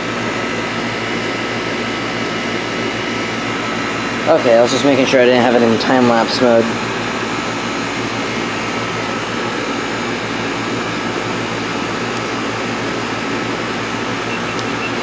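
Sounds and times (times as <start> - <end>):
air conditioner hum: 0.0 - 15.0
condenser fan air rush: 0.0 - 15.0.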